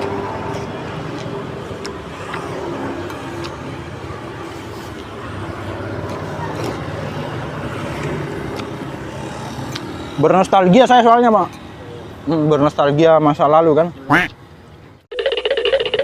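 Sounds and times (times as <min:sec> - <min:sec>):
passing motor vehicles: 0:00.0 - 0:15.1.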